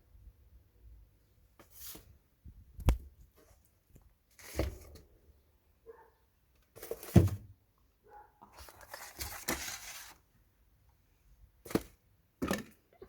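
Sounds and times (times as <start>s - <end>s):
rustling and scraping: 8.4s - 10.2s.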